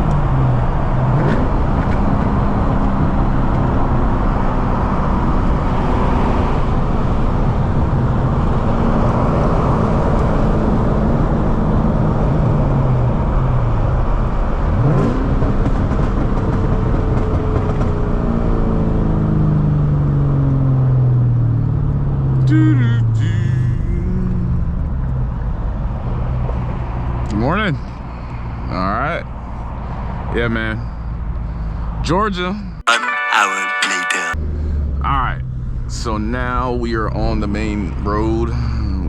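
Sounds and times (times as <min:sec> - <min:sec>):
road noise: 0:00.0 - 0:16.2, 0:20.9 - 0:32.1
car engine while driving: 0:00.0 - 0:32.8, 0:34.4 - 0:39.0.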